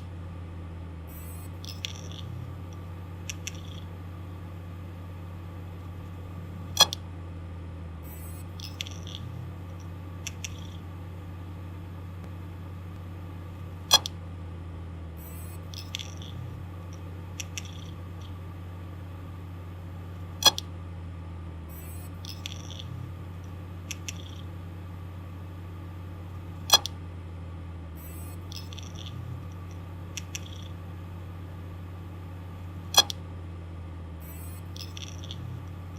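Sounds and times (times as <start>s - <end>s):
hard disk drive humming: 0.0s - 35.9s
hard disk ticks and scratchy seeks: 1.1s - 4.0s, 6.6s - 7.1s, 8.2s - 10.9s, 13.8s - 14.2s, 15.3s - 18.4s, 20.4s - 20.7s, 21.8s - 24.5s, 26.6s - 27.0s, 32.9s - 33.2s.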